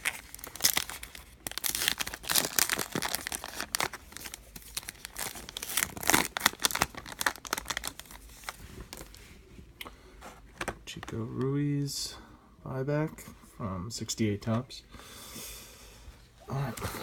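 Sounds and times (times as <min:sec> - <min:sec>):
card pack wrappers tearing: 0:00.0 - 0:09.2.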